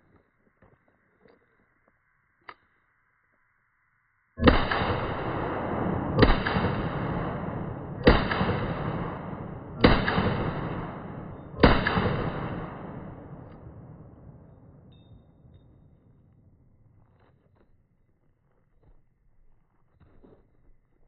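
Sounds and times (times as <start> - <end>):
rifle shots with echo: 4.4 - 15.0.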